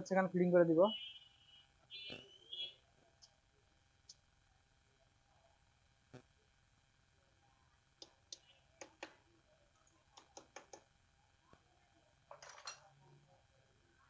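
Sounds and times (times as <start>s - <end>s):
metal parts clicking and tapping: 12.3s - 12.9s.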